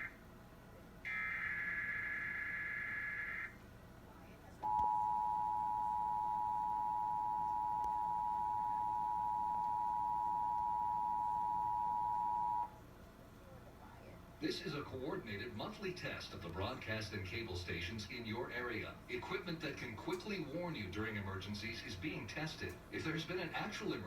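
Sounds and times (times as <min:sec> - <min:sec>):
two-tone attention signal: 0:04.6 - 0:12.7.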